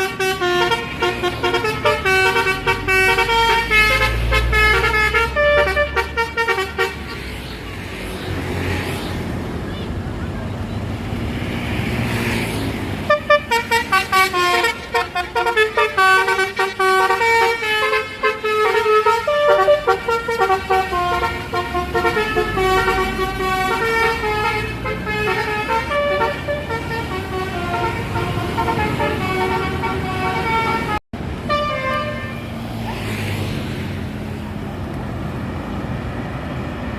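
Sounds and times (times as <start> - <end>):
multi-tone air horn melody: 0.0 - 7.1, 13.1 - 32.6
bus engine rumble: 0.0 - 36.9.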